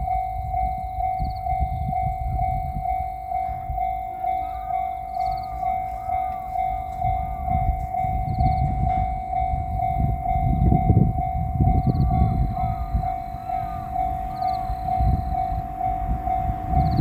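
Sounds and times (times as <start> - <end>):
level-crossing bell ringing: 0.0 - 17.0
train rumble and wheel clatter: 0.0 - 17.0.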